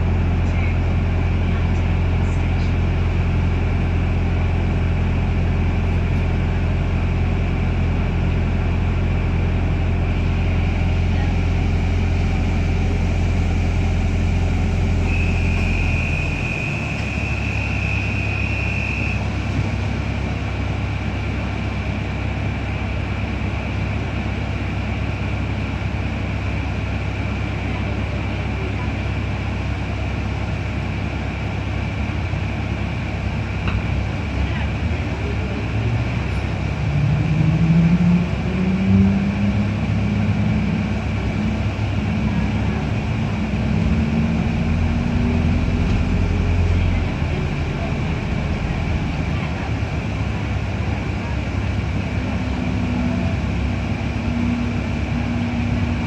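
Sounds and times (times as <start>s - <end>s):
bus engine drone: 0.0s - 56.0s
high whistling tone: 14.6s - 19.3s.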